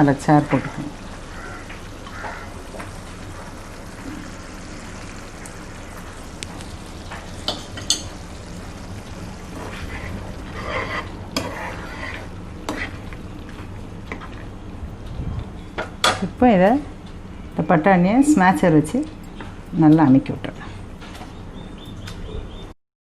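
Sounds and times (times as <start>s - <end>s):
ladle scraping mash in pan: 9.7s - 13.1s.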